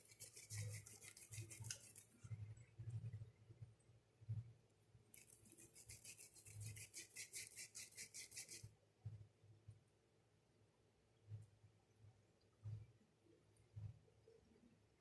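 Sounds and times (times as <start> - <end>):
hands rubbing dough: 0.0 - 3.2, 5.1 - 8.8.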